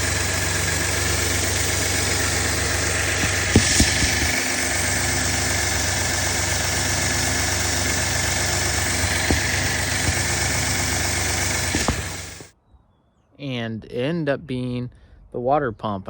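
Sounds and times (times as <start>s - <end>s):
vehicle engine idling: 0.0s - 12.5s.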